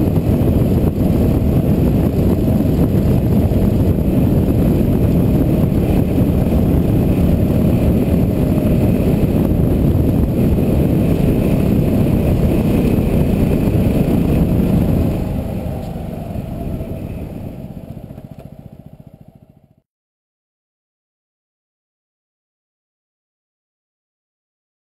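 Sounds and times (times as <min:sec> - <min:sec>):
motorcycle engine running: 0:00.0 - 0:19.8.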